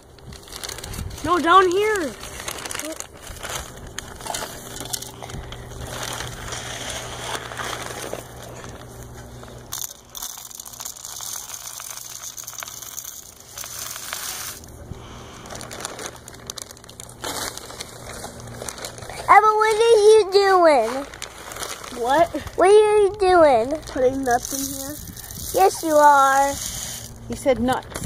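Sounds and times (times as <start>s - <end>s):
rustling and crackling: 0.0s - 28.0s.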